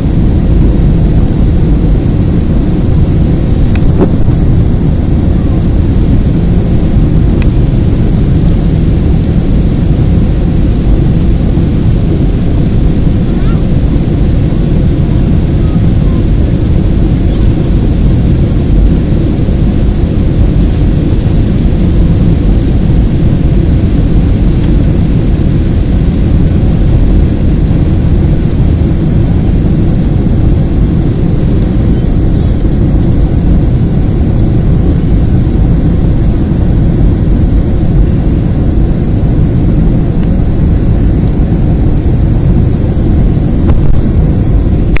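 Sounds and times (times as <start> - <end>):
jet engines rumbling in cabin: 0.0 - 45.0
rushing air: 0.0 - 45.0.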